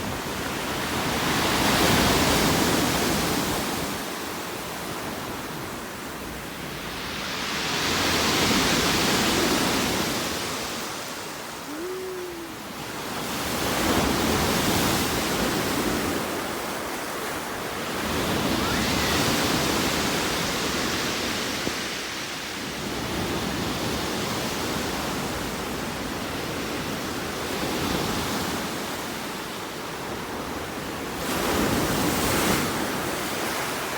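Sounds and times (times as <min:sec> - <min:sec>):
waves breaking: 0:06.8 - 0:22.3
faint whistling tone: 0:11.6 - 0:12.7.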